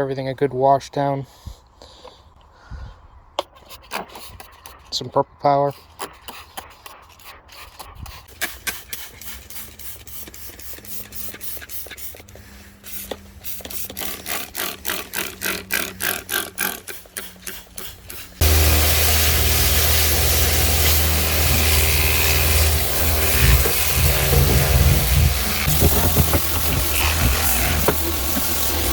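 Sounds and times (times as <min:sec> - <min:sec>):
spray bottle squirting: 0:08.3 - 0:28.9
pressure washer spraying: 0:12.8 - 0:28.9.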